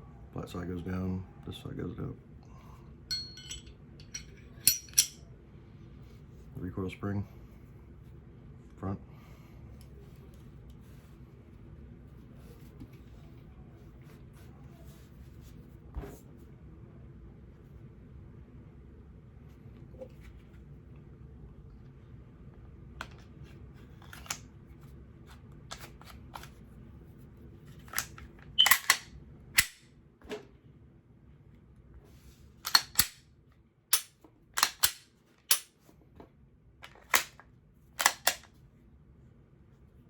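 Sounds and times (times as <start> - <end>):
pistol metallic clicks and snaps: 28.0 - 29.8, 32.6 - 33.2, 33.9 - 35.7, 37.1 - 37.4, 38.0 - 38.5.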